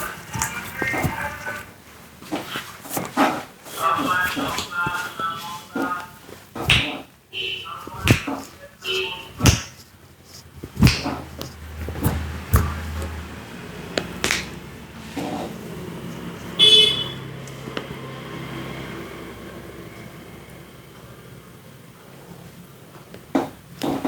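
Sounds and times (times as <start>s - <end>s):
hands slapping and tapping: 6.6s - 7.0s, 7.8s - 8.6s, 9.2s - 13.2s, 13.9s - 14.6s
vehicle horn blast: 7.3s - 7.8s, 8.8s - 9.4s, 16.6s - 17.3s.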